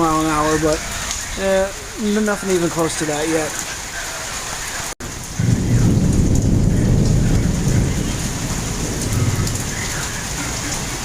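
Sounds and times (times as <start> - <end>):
heavy rain: 0.0 - 11.0
rolling thunder: 5.0 - 11.0.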